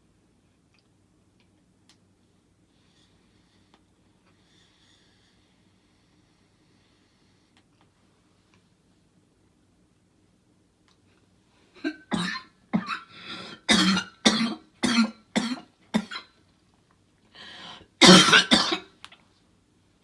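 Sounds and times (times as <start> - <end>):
person coughing: 11.8 - 16.3, 18.0 - 18.9.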